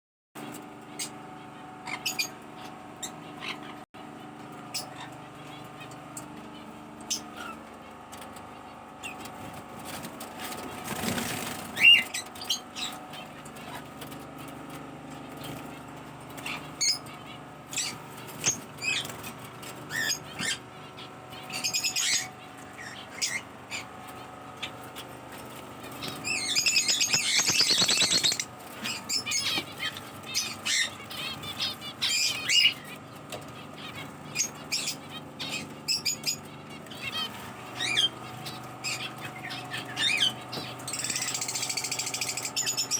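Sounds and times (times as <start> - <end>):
pet birds chirping: 0.9 - 3.8, 4.6 - 42.9
wings flapping: 9.2 - 12.1, 25.4 - 29.8.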